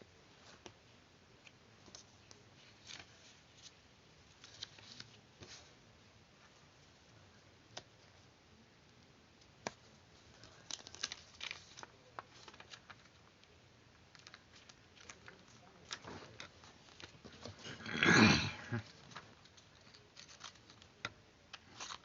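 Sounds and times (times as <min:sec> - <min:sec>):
paper rustling: 0:01.8 - 0:05.8, 0:09.6 - 0:13.5, 0:14.1 - 0:17.7, 0:18.8 - 0:22.0.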